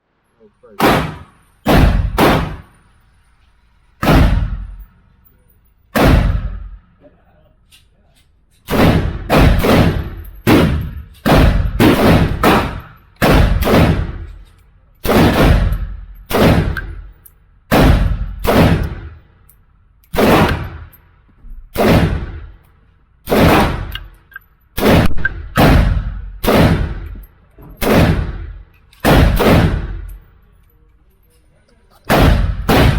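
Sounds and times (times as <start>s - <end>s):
gunshots: 0.8s - 2.7s, 4.0s - 4.9s, 5.9s - 6.8s, 8.7s - 14.4s, 15.0s - 17.1s, 17.7s - 19.2s, 20.1s - 20.9s, 21.7s - 22.6s, 23.2s - 24.1s, 24.8s - 27.2s, 27.8s - 30.1s, 32.1s - 32.9s.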